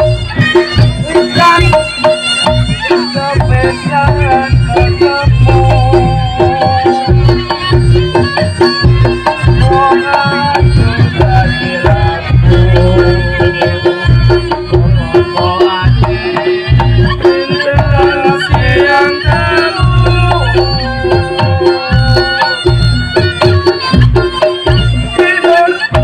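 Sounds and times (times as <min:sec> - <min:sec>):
drumming: 0:00.0 - 0:26.0
wavering high melody: 0:00.0 - 0:26.0.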